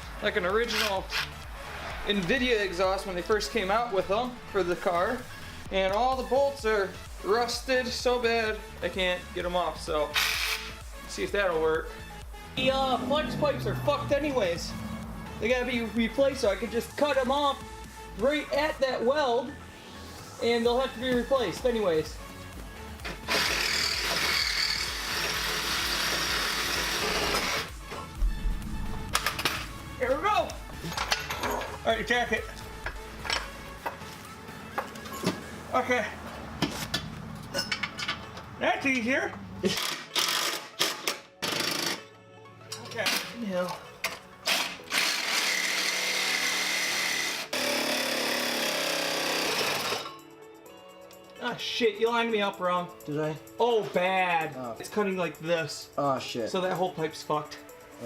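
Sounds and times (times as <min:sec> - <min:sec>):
power tool cutting metal pipe: 0:10.1 - 0:10.8, 0:23.1 - 0:27.7, 0:44.4 - 0:50.2.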